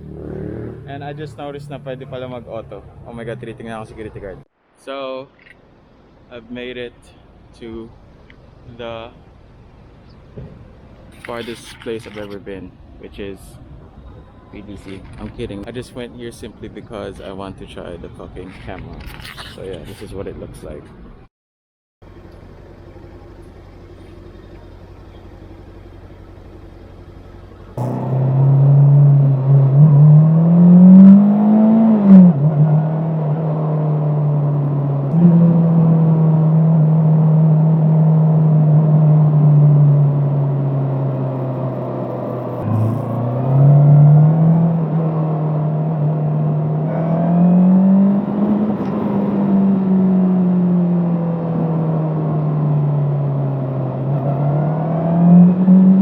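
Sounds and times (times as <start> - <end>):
motorcycle engine accelerating: 0.0 - 1.2, 22.1 - 56.0.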